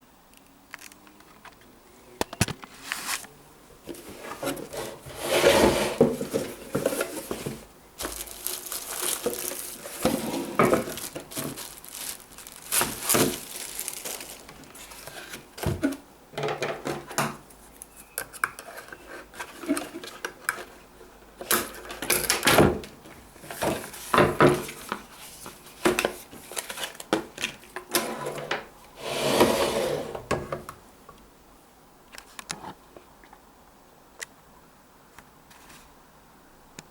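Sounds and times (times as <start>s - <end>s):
packaging rustling: 5.9s - 15.8s.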